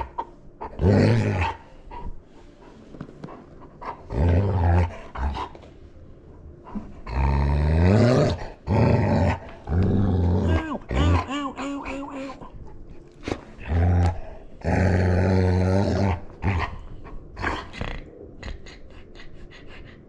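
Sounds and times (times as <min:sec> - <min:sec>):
dog growling: 0:00.0 - 0:02.1, 0:03.8 - 0:05.7, 0:06.7 - 0:12.6, 0:13.3 - 0:19.8
dog breathing: 0:16.8 - 0:20.0.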